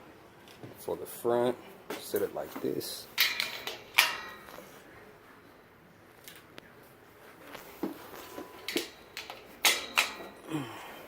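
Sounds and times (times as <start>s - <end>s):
metal brackets clicking and knocking: 3.2s - 4.7s, 8.5s - 10.5s.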